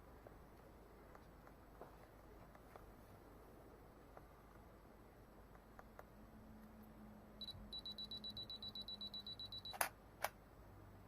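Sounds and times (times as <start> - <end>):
camera self-timer beeping: 7.4 - 9.9.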